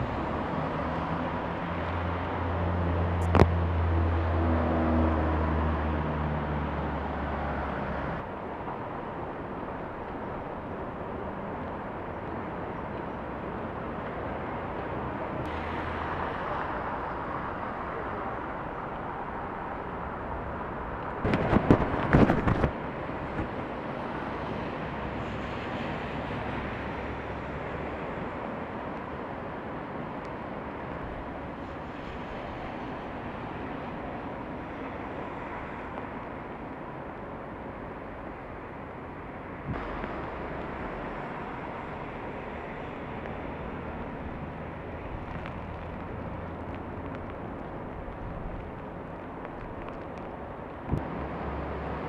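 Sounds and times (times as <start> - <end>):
storm rushing noise: 21.2 - 23.6.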